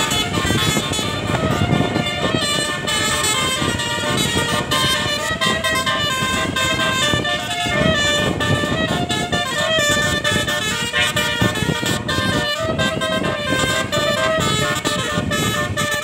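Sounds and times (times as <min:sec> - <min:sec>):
low rumble of vehicle noise: 0:00.0 - 0:16.0
multi-tone bus air horn tune: 0:00.0 - 0:16.0.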